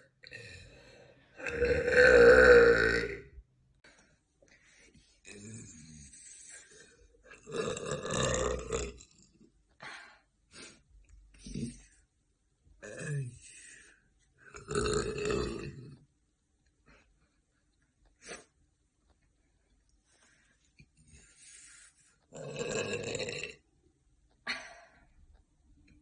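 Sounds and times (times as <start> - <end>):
woman burping: 1.4 - 3.3, 7.4 - 9.0, 14.6 - 15.9, 22.4 - 23.6.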